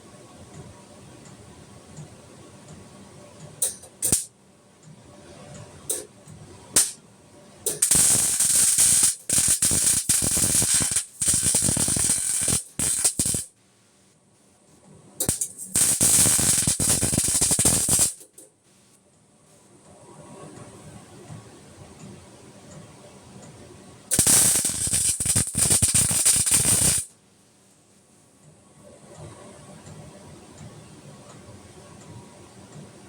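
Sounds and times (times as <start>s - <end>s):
arc welding crackling: 3.6s - 4.3s, 6.8s - 7.0s, 7.6s - 13.5s, 15.2s - 18.5s, 24.1s - 27.2s.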